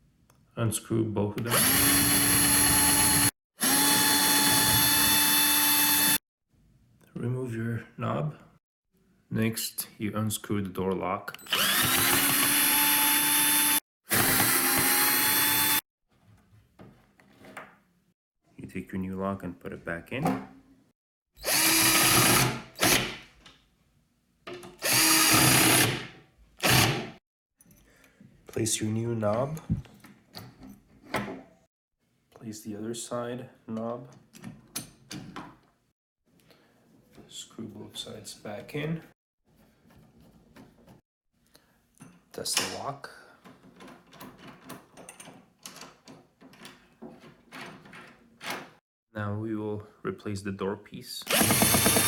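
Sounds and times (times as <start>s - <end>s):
cordless drill motor whine: 1.5s - 6.2s, 11.5s - 15.8s, 21.4s - 23.0s, 24.8s - 25.9s, 51.3s - 52.0s
drill trigger bursts: 1.5s - 6.2s, 11.5s - 15.8s, 21.4s - 23.2s, 24.8s - 27.2s, 51.3s - 52.0s.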